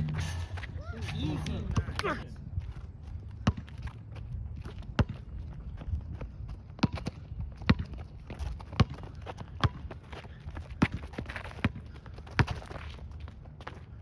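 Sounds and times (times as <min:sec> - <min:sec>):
basketball bouncing on hard court: 0:03.4 - 0:03.9, 0:04.6 - 0:05.5, 0:06.7 - 0:12.9.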